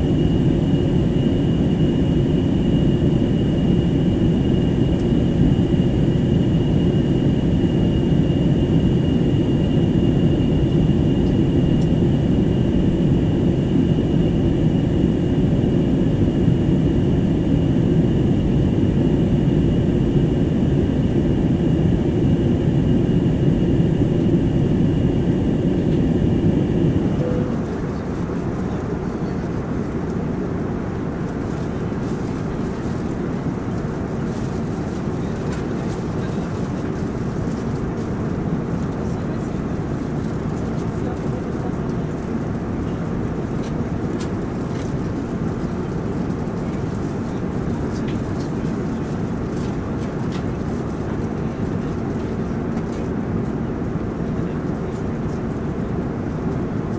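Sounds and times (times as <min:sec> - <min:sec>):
faint high whine: 0:00.0 - 0:30.1
jet engine drone: 0:00.0 - 0:52.6.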